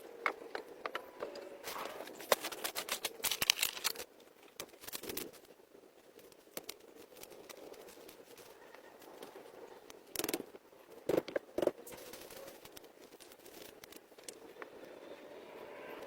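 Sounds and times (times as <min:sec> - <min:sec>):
sticks snapping and scraping: 0:01.6 - 0:05.5, 0:06.2 - 0:10.5, 0:11.9 - 0:14.8.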